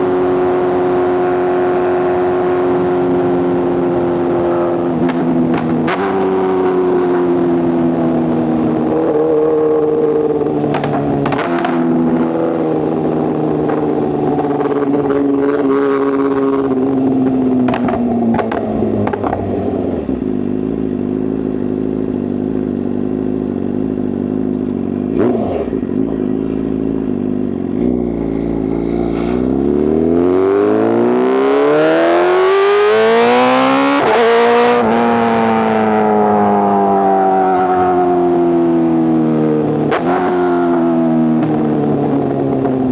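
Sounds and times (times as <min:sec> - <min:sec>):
motorcycle engine revving: 0:00.0 - 0:42.9
gear change: 0:02.5 - 0:35.6.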